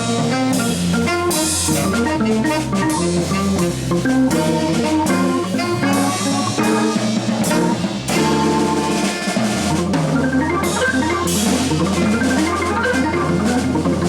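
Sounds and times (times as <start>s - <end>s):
tenor saxophone: 0.0s - 10.0s
drum kit hits: 0.0s - 14.0s
organ playing jazz: 0.0s - 14.0s.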